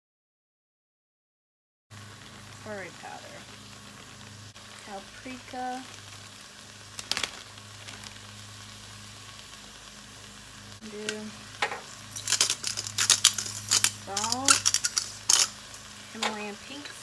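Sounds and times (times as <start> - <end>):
steady low hum: 2.2 - 17.0
spices shaken from containers: 11.9 - 16.4.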